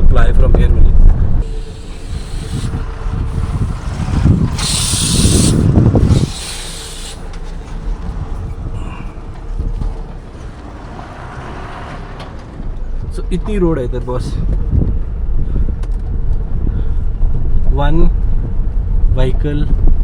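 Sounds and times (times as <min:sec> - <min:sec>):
tyres rumbling on rough road: 0:00.0 - 0:20.0
loud burst of hiss: 0:01.4 - 0:07.6.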